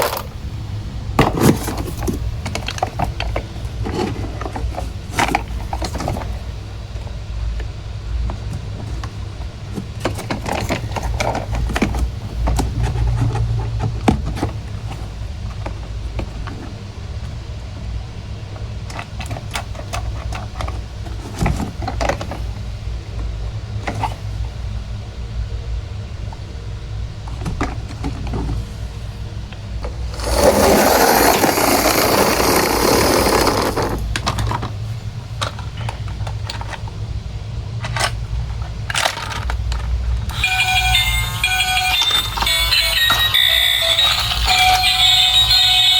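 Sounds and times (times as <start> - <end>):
plastic toys clicking and knocking: 0.0 - 0.4, 30.1 - 34.7, 35.4 - 36.9, 37.8 - 45.9.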